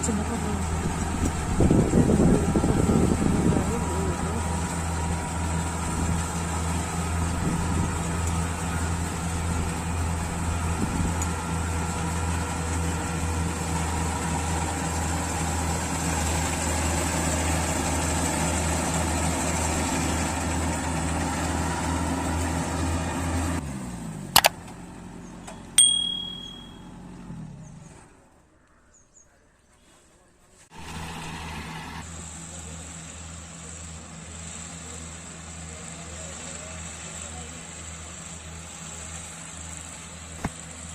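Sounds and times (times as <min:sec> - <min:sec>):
combine harvester engine winding down: 0:00.0 - 0:25.8, 0:30.7 - 0:40.9
sharp clicks: 0:24.4 - 0:24.6
brief ringing tone: 0:25.8 - 0:27.0.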